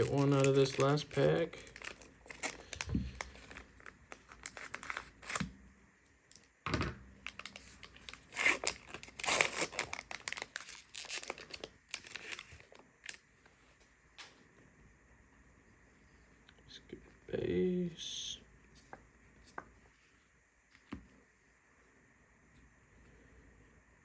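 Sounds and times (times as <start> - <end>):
card pack wrapper tearing: 0.0 - 5.5, 7.2 - 13.2.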